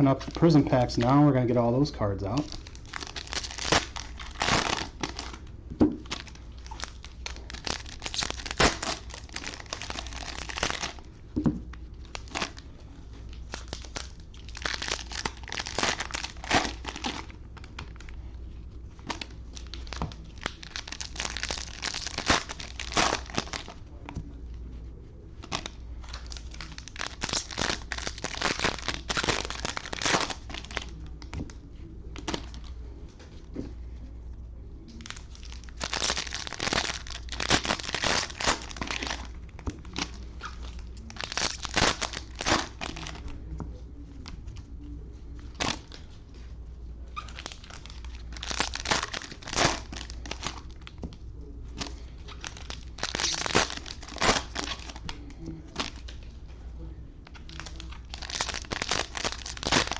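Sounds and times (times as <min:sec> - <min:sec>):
plastic wrappers tearing and crinkling: 0:02.3 - 0:05.4, 0:06.0 - 0:11.1, 0:11.8 - 0:12.6, 0:13.3 - 0:18.2, 0:19.0 - 0:23.8, 0:25.4 - 0:31.4, 0:35.0 - 0:43.4, 0:45.4 - 0:46.1, 0:47.1 - 0:51.2, 0:51.8 - 0:56.3, 0:57.2 - 0:59.9.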